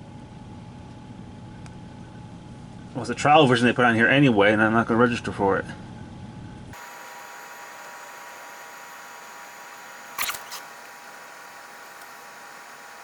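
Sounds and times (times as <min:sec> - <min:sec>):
faint hiss with thin whine: 0:06.8 - 0:13.0
sharp clicks: 0:10.0 - 0:13.0.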